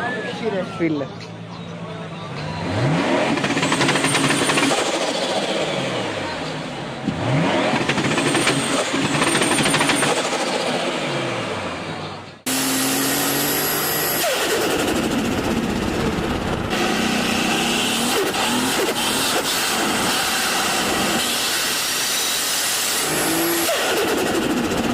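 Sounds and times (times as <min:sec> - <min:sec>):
car engines revving: 0:00.0 - 0:24.9.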